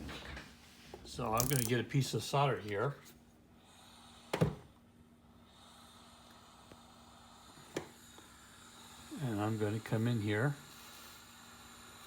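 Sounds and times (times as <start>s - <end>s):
faint steady hum: 0.0s - 12.0s
small metal tools handled: 1.3s - 1.8s.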